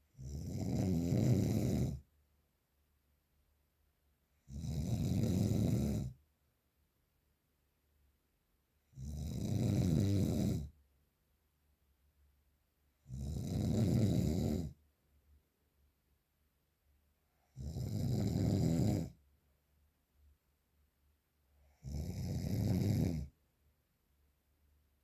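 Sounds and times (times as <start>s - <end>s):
person snoring heavily: 0.2s - 2.0s, 9.0s - 10.7s, 13.1s - 14.7s, 17.6s - 19.1s, 21.8s - 23.3s.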